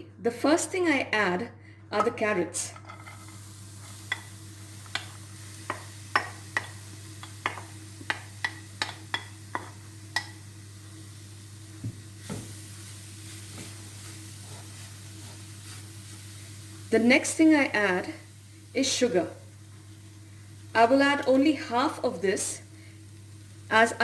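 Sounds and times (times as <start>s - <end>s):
carrots sizzling: 3.0s - 24.0s.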